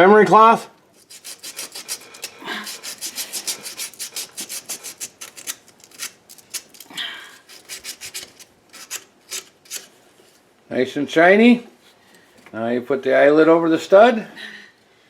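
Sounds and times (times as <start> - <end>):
emery cloth rasping on metal: 1.0 - 10.0.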